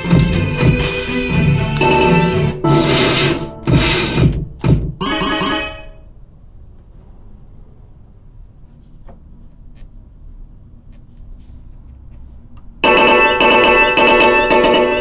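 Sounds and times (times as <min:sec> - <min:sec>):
electronic chiming jingle: 0:05.0 - 0:06.0.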